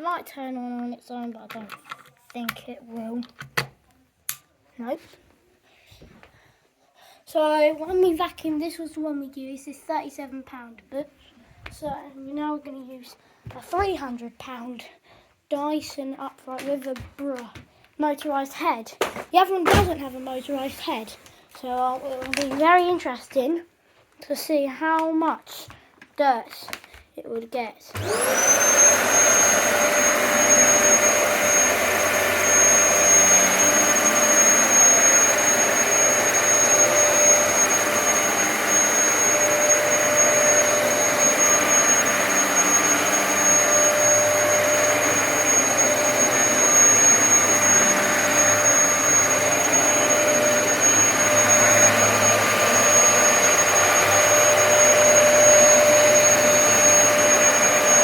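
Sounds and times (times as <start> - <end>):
vacuum cleaner motor whining: 27.9 - 58.0.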